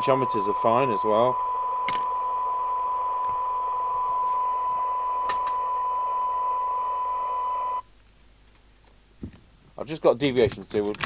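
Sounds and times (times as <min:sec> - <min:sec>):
radio receiver hiss: 0:00.0 - 0:07.8
steady test tone: 0:00.0 - 0:07.8
small clicks: 0:01.8 - 0:02.2.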